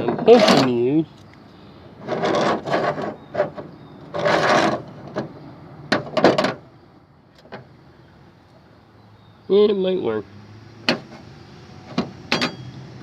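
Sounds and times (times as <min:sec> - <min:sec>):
metal lock parts scraping: 0:00.0 - 0:01.3, 0:02.0 - 0:06.6, 0:11.9 - 0:12.8.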